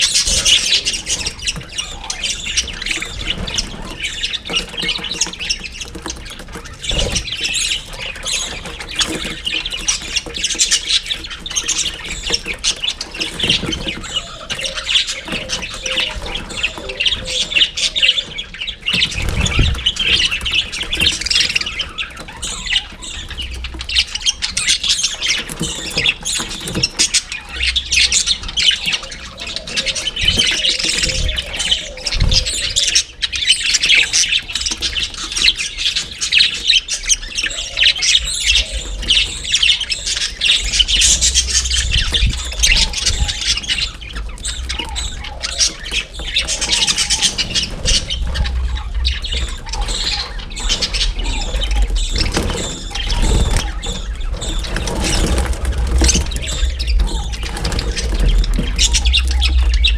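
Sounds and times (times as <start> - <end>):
budgerigars chattering and squawking: 0.0 - 59.9
low rumble: 38.3 - 59.9.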